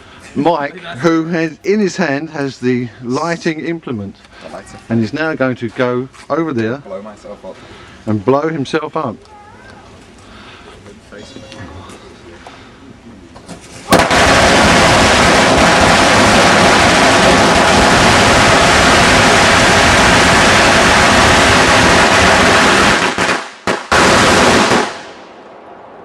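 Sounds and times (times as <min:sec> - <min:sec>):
firecrackers crackling: 0:13.6 - 0:26.0.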